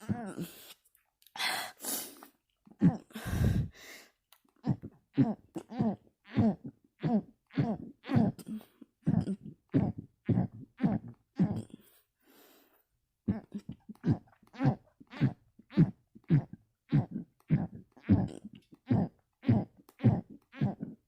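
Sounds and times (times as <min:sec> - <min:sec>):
small closed-mouth burps: 0:04.6 - 0:11.9, 0:13.3 - 0:21.0.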